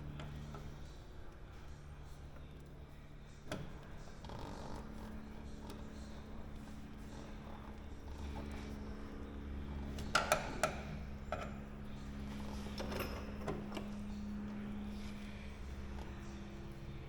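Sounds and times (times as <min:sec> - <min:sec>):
steady low hum: 0:00.0 - 0:17.0
sharp knocks and clicks on metal parts: 0:09.9 - 0:11.6.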